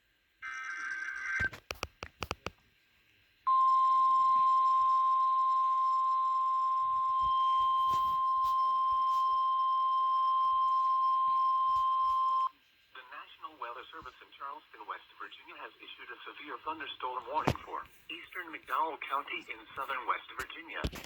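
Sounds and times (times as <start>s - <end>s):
loud steady alert beep: 3.5s - 12.5s.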